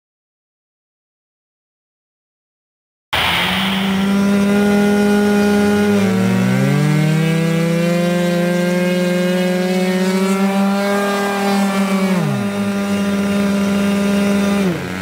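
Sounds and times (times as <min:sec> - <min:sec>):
model engine high whine: 0:03.2 - 0:15.0
model engine rising pitch: 0:03.2 - 0:15.0.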